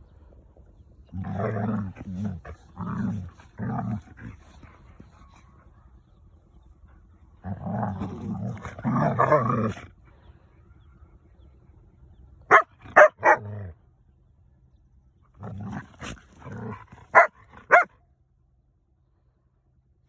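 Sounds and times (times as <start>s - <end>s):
dogs growling: 1.0s - 5.4s, 7.4s - 10.1s, 15.4s - 17.3s
dogs barking sharply: 12.5s - 13.6s, 17.1s - 18.0s.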